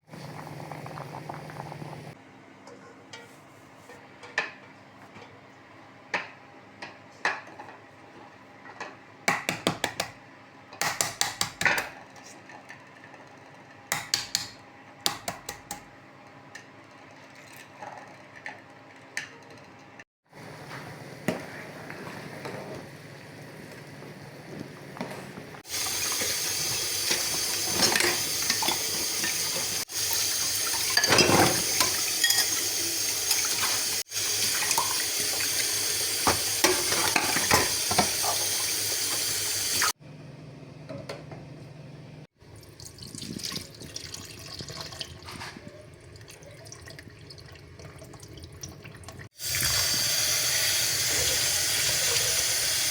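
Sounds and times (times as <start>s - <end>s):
dishes and cutlery clinking: 27.1s - 29.7s, 30.8s - 32.7s
tap running into sink: 34.4s - 39.9s.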